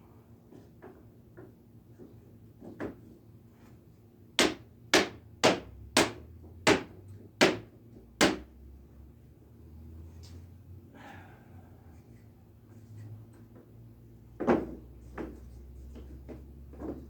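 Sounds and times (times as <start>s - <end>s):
wall sconce parts knocking: 4.4s - 8.5s.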